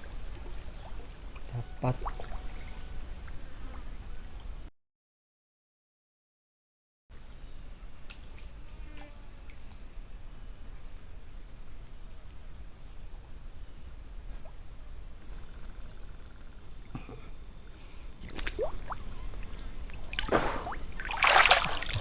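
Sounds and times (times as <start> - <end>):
forest insects chorus: 0.0 - 4.7, 7.2 - 22.0
water sloshing and splashing: 18.2 - 22.0.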